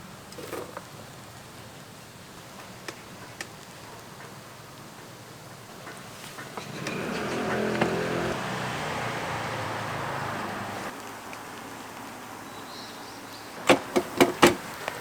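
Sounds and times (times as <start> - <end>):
vehicle passing: 5.7 - 10.9.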